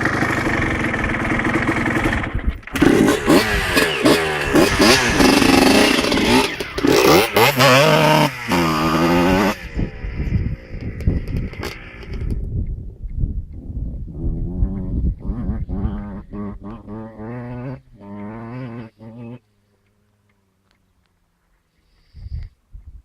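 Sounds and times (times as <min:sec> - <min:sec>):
two-stroke motorcycle engine revving: 0:00.0 - 0:12.4, 0:14.1 - 0:19.4.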